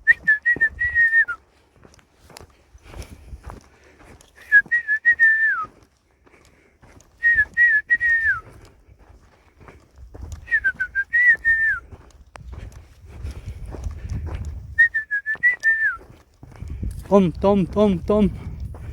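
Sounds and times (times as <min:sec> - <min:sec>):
man whistling: 0:00.0 - 0:01.4, 0:04.4 - 0:05.8, 0:07.2 - 0:08.6, 0:10.4 - 0:11.8, 0:14.8 - 0:16.1.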